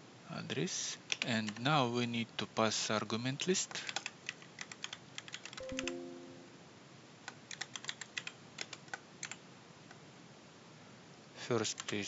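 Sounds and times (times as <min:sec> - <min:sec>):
keyboard typing: 0:03.9 - 0:06.5, 0:07.5 - 0:09.4
short multi-pitch tone: 0:05.6 - 0:06.7.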